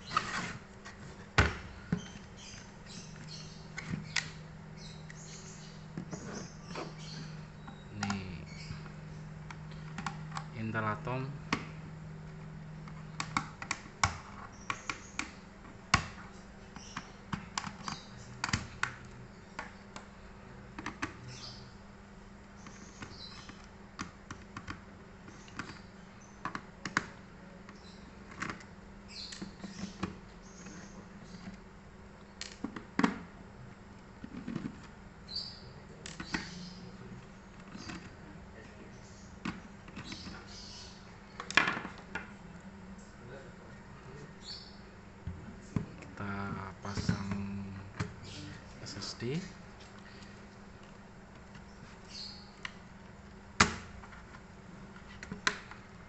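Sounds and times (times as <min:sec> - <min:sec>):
low steady hum: 0:00.0 - 0:56.0.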